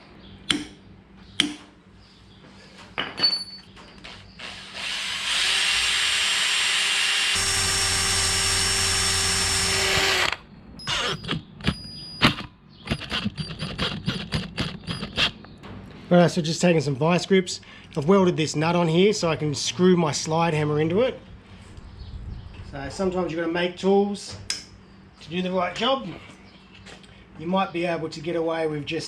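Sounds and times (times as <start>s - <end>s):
handheld power tool running: 4.4s - 11.3s.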